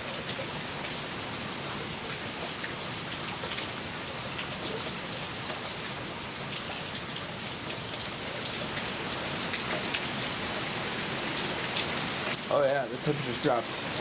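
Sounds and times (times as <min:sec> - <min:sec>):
heavy rain pouring: 0:00.0 - 0:14.0
raindrops ticking close by: 0:00.0 - 0:14.0.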